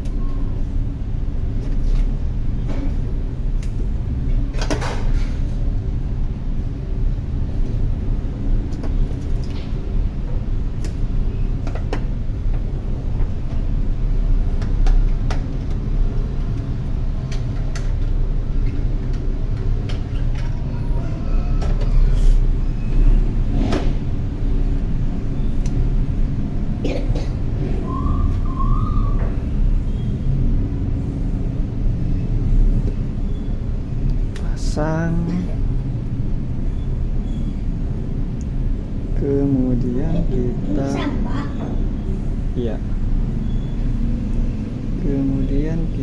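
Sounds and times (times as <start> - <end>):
low background rumble: 28.8 - 46.0.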